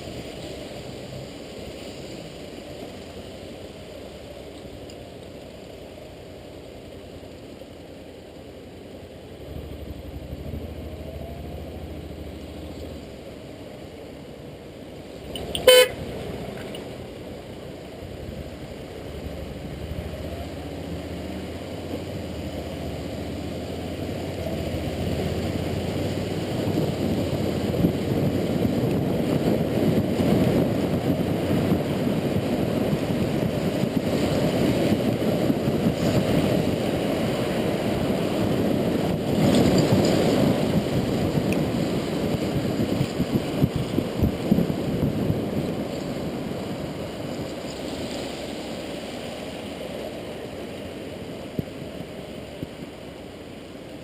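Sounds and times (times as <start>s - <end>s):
motorcycle riding rumble: 0.0s - 54.0s
vehicle horn toot: 15.4s - 16.0s.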